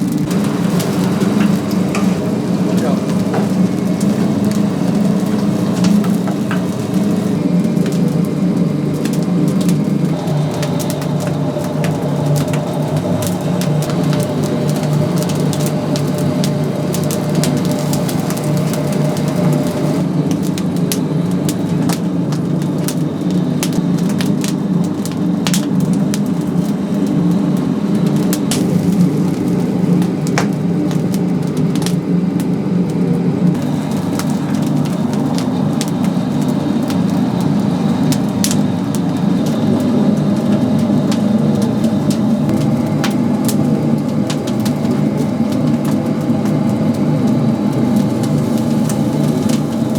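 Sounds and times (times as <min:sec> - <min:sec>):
steady low rumble: 0:00.0 - 0:20.1
wood fire crackling and popping: 0:00.0 - 0:49.9.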